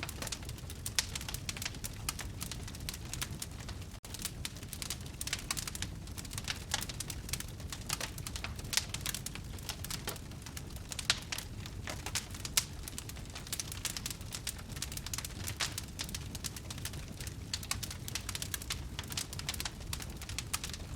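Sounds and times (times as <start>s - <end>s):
fire crackling and popping: 0.0s - 20.9s.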